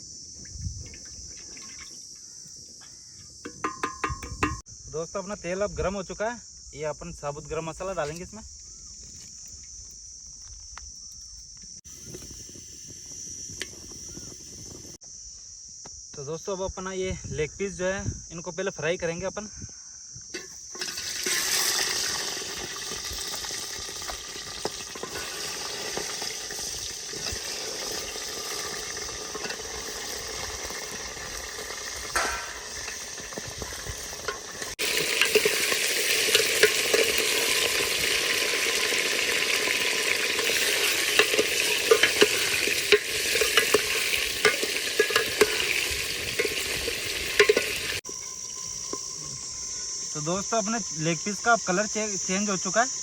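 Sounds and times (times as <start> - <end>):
chicken sizzling in oil: 20.4 - 49.5
stirring clicks and scrapes: 40.4 - 47.8.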